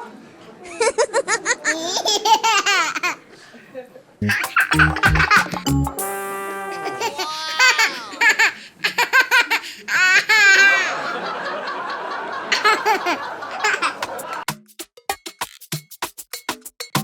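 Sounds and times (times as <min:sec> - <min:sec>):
high-pitched laughter: 0:04.2 - 0:05.6, 0:06.7 - 0:11.5, 0:12.3 - 0:14.4.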